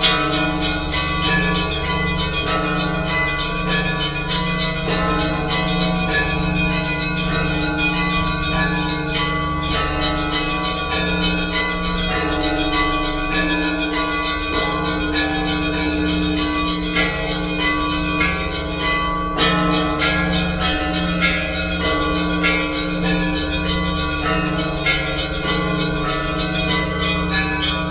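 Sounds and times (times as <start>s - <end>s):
small church bells ringing: 0.0s - 27.9s.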